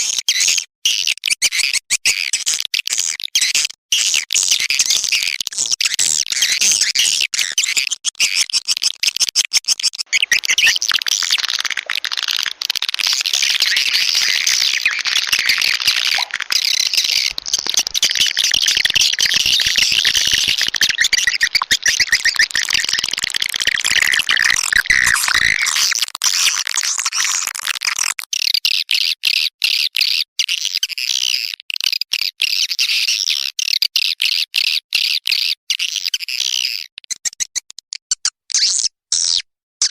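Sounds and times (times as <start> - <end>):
swiftlets twittering: 10.1 - 25.9.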